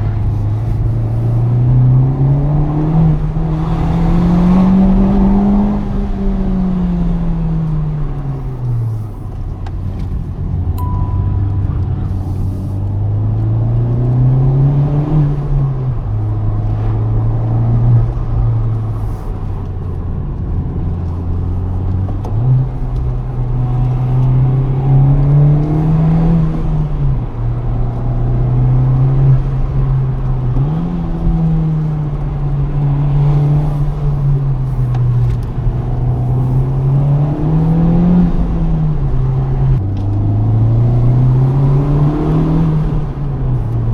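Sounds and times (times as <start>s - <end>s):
car engine accelerating through gears: 0.0s - 43.9s
short high beep: 10.7s - 11.8s.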